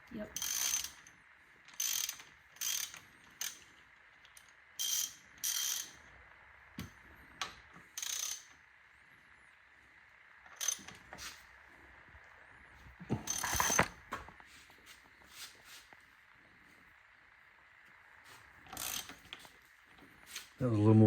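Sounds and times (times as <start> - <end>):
ratchet wrench clicking: 0.3 - 6.0, 7.9 - 8.6, 10.6 - 11.0, 13.3 - 13.9, 18.7 - 19.4.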